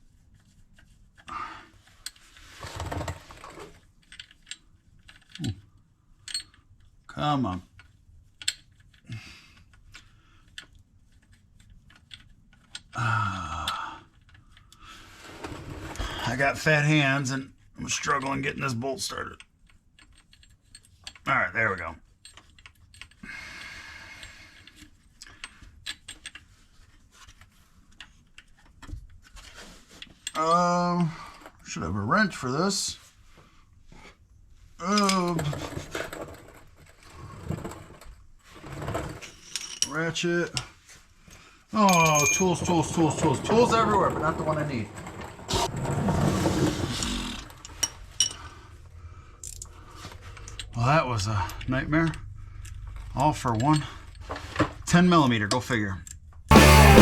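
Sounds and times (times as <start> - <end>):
rattling scrape: 15.1 - 16.4, 35.5 - 39.8, 42.3 - 54.9
metal parts clicking: 49.4 - 54.3.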